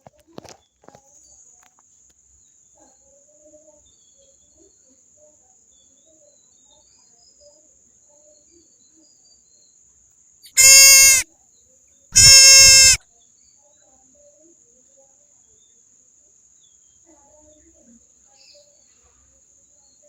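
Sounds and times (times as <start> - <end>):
faint chirps: 10.5 - 11.2, 12.2 - 13.0
harsh loud scream: 10.5 - 11.2, 12.2 - 13.0
high hiss: 10.5 - 11.2, 12.2 - 13.0.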